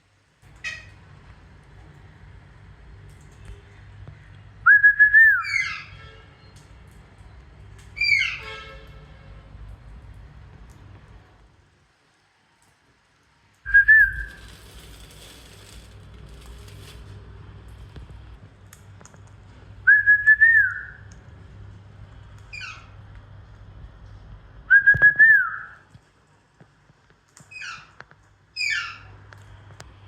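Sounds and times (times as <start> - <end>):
parrot whistling: 4.7 - 5.9, 13.7 - 14.4, 19.9 - 21.0
parrot falling chirp: 13.7 - 14.4.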